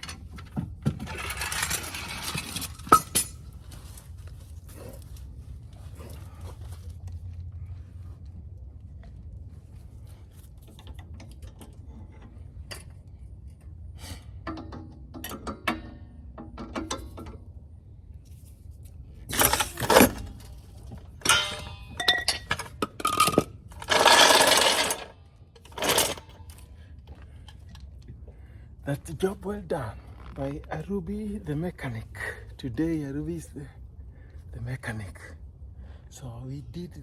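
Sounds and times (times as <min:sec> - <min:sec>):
metal tools clinking: 0:00.0 - 0:06.4, 0:19.2 - 0:26.7.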